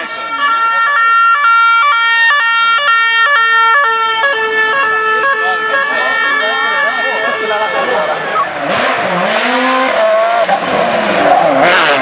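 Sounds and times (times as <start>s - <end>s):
two-tone emergency siren: 0.0s - 8.7s.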